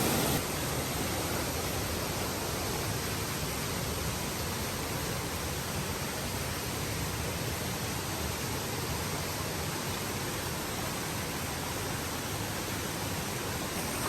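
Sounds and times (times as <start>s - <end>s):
waterfall rushing: 0.0s - 3.6s, 9.7s - 14.0s.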